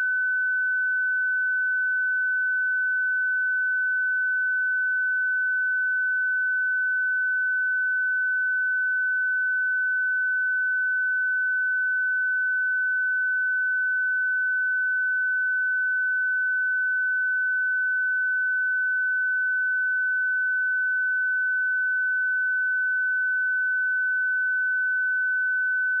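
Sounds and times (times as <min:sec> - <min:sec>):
high sine-wave test tone: 0:00.0 - 0:26.0.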